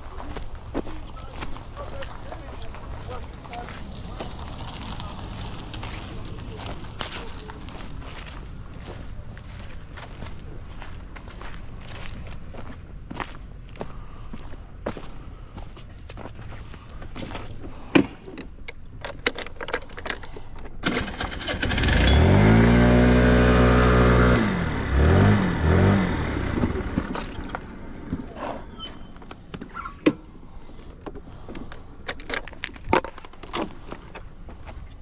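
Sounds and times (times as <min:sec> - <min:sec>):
clicks and handling noises: 0:17.4 - 0:21.0, 0:31.1 - 0:34.3
moped engine revving: 0:19.0 - 0:28.2.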